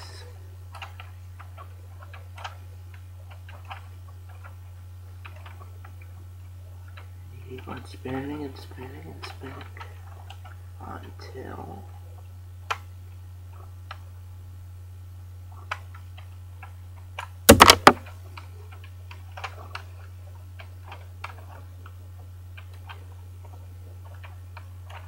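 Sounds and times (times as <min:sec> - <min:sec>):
plastic bricks clicking: 0:17.5 - 0:18.0.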